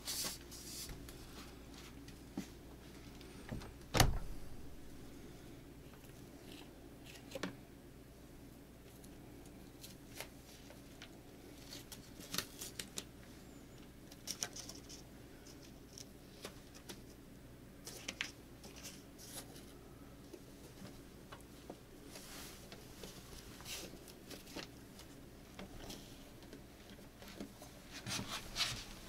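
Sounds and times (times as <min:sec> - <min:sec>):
faint room hum: 0:00.0 - 0:29.0
clicks and rustles of handwork: 0:08.8 - 0:13.2, 0:14.1 - 0:17.2, 0:17.8 - 0:29.0.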